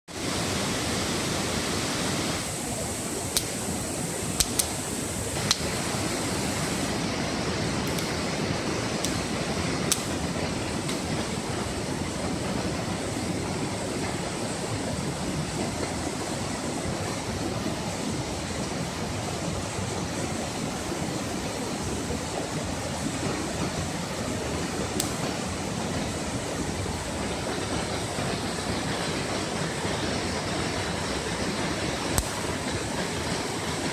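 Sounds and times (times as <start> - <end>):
campfire burning: 0.1 - 33.9
fire popping: 2.4 - 16.2, 22.2 - 33.9.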